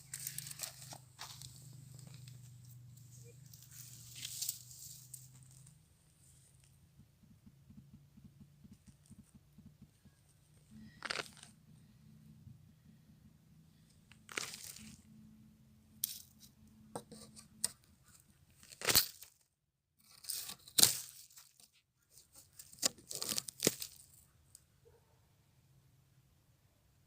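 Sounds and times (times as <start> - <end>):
short tearing crackling sounds: 10.8 - 11.6, 14.1 - 15.0, 22.3 - 24.2.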